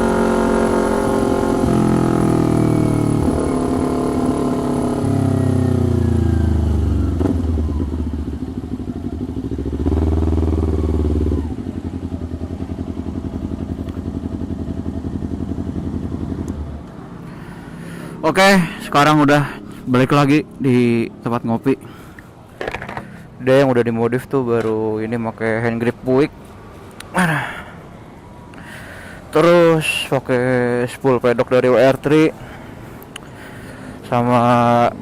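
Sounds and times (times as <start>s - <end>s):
motorcycle engine with loud exhaust: 0.0s - 23.4s.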